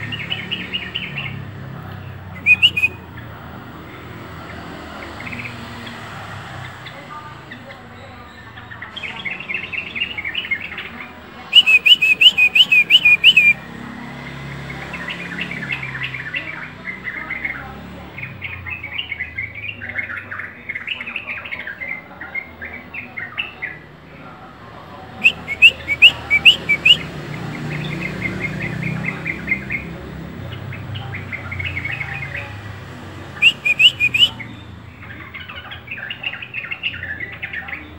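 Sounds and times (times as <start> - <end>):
birds chirping and twittering: 0.0 - 37.9
quick repeated bird chirps: 2.3 - 3.3, 9.0 - 13.6, 25.2 - 32.5, 33.2 - 37.7.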